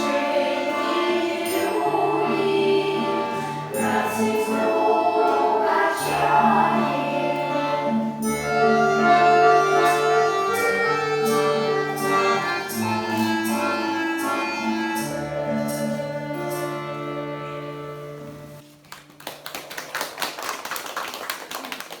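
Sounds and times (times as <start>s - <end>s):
folk instrument ensemble playing: 0.0s - 18.7s
audience applause: 18.9s - 22.0s.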